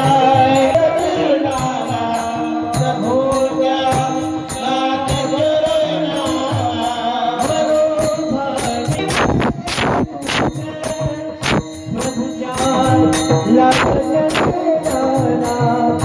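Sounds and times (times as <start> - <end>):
small hand cymbals striking: 0.0 - 16.0
hand drum playing: 8.7 - 12.0, 12.8 - 15.2.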